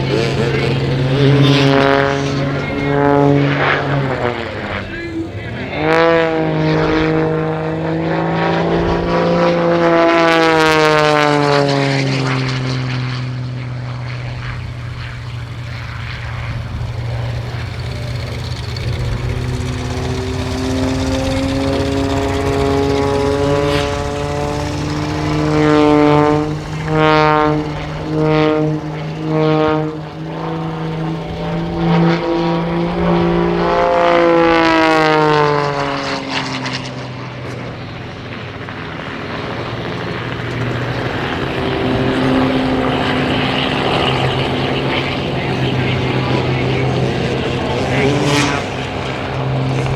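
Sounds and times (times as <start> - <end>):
propeller plane engine: 0.0 - 49.9.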